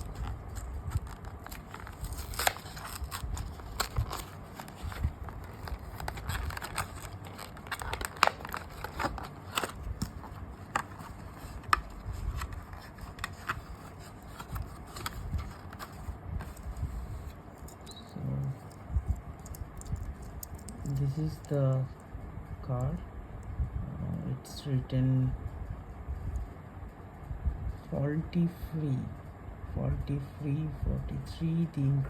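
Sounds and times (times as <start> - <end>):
plastic and cardboard crackling: 0.0 - 21.6.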